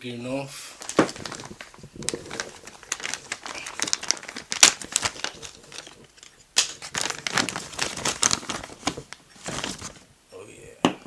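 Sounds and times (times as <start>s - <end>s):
packaging crinkling: 0.7s - 10.1s.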